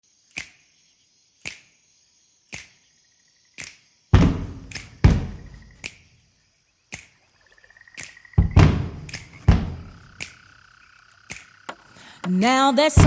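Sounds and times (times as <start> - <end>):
finger snaps: 0.3 - 0.6, 1.4 - 1.7, 2.5 - 2.8, 3.6 - 3.8, 4.6 - 5.0, 5.8 - 6.0, 8.0 - 8.2, 9.0 - 9.4, 10.1 - 10.4, 11.3 - 11.5
deep bass thumps: 4.2 - 5.8, 8.4 - 10.1.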